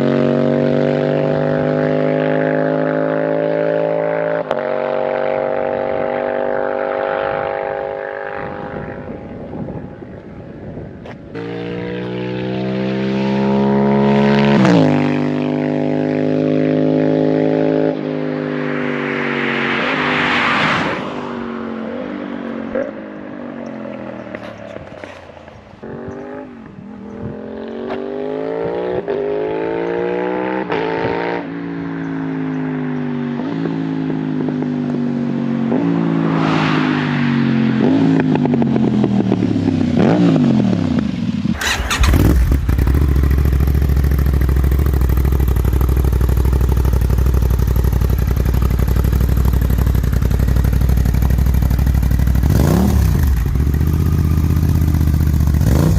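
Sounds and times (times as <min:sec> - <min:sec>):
motorcycle engine shifting gears: 0:21.8 - 0:31.2, 0:37.7 - 0:55.9.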